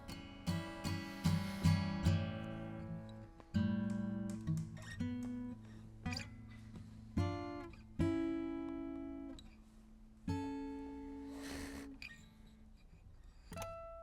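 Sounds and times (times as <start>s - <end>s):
acoustic guitar chords strummed: 0.0s - 9.4s.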